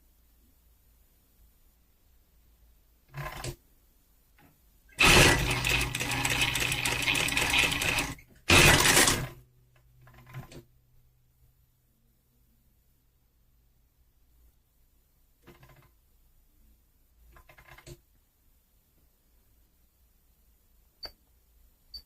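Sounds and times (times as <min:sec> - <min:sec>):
sewing machine running: 0:05.0 - 0:09.4.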